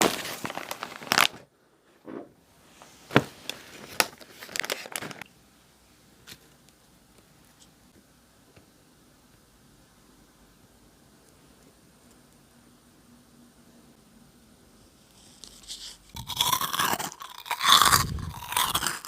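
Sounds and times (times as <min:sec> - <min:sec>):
plastic bag crackling: 0:00.0 - 0:01.5, 0:03.6 - 0:05.2.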